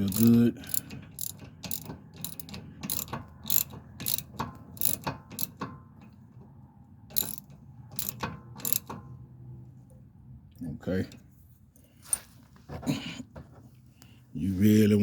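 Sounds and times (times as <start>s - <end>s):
ratchet clicking: 0.0s - 5.7s, 7.1s - 9.0s.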